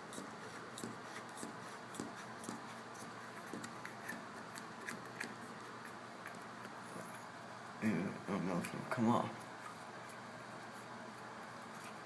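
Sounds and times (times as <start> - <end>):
small clicks and scraping by hand: 0.1 - 7.3.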